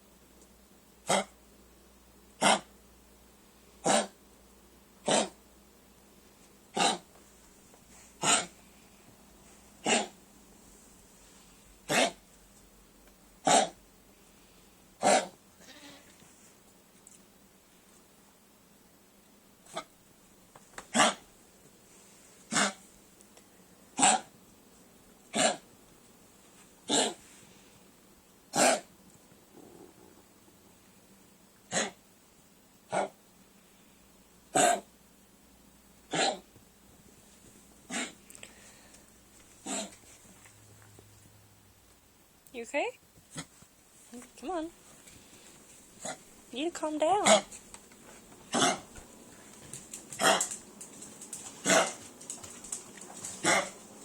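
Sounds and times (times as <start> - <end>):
dog coughing: 2.4 - 2.7, 3.8 - 4.1, 5.0 - 5.4, 6.8 - 7.0, 8.2 - 8.5, 9.8 - 10.1, 11.9 - 12.2, 13.4 - 13.8, 15.0 - 15.3, 20.9 - 21.2, 22.5 - 22.8, 24.0 - 24.3, 25.3 - 25.6, 26.9 - 27.2, 28.6 - 28.9, 31.7 - 32.0, 34.6 - 34.8, 36.1 - 36.4, 37.9 - 38.2, 39.6 - 39.9, 48.5 - 48.9, 51.6 - 52.0, 53.4 - 53.8.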